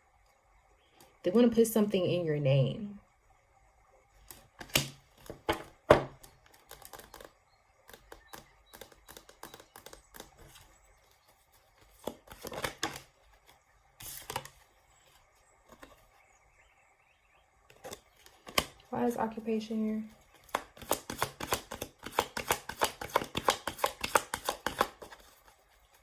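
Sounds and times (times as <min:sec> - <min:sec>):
cards clicking and tapping: 0:04.2 - 0:16.0, 0:17.7 - 0:18.9, 0:20.3 - 0:26.0
cards snapping: 0:04.3 - 0:07.3, 0:07.9 - 0:10.7, 0:11.8 - 0:14.6, 0:17.7 - 0:18.9, 0:20.4 - 0:25.5.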